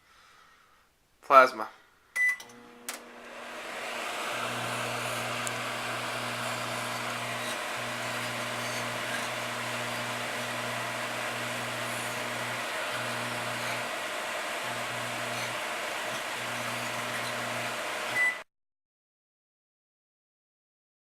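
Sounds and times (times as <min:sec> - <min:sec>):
microwave oven humming: 0:02.2 - 0:18.4.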